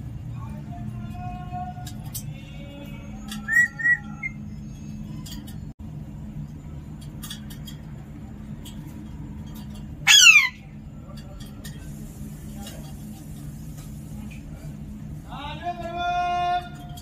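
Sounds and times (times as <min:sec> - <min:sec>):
parrot whistling: 0:03.4 - 0:04.5.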